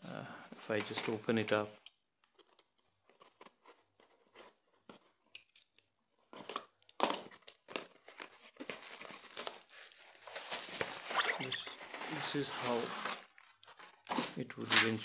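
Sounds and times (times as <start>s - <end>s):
packaging crinkling and tearing: 6.3s - 11.1s, 11.8s - 15.0s.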